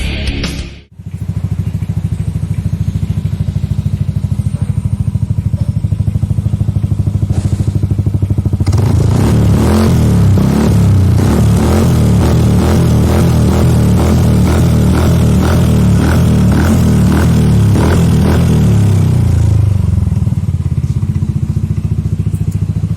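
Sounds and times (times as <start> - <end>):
loud music: 0.0 - 1.0
scooter engine idling: 0.9 - 22.9.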